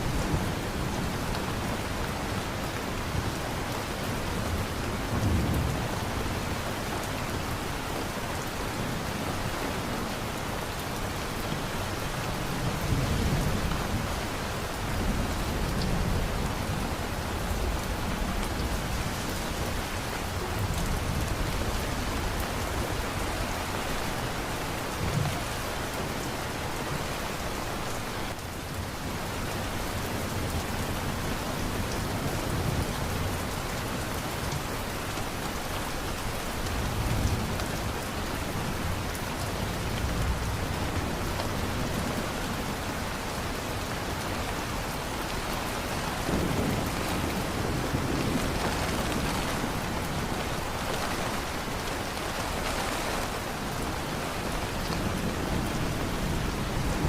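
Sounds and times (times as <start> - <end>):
heavy rain falling: 0.0 - 57.0
low rolls of thunder: 46.2 - 51.7.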